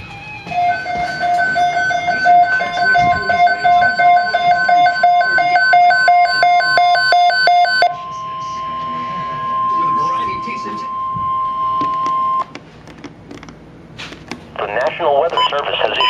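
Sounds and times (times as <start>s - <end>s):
steady single-pitch alert tone: 0.0s - 12.4s
two-pitch electronic beeping: 0.0s - 12.4s.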